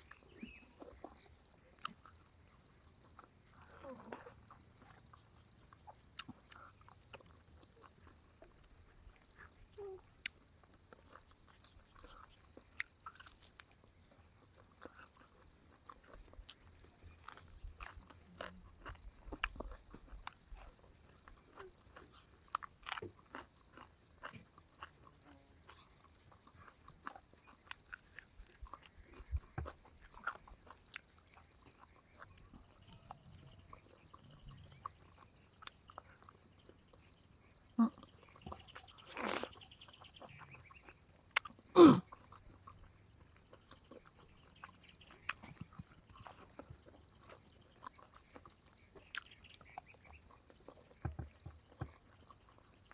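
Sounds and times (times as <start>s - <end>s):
person chewing food: 0.0s - 52.9s.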